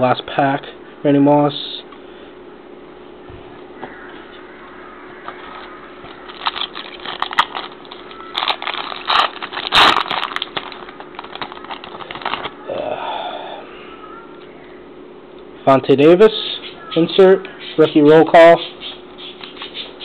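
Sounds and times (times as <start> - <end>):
foil wrapper crinkling and tearing: 5.2 - 12.6.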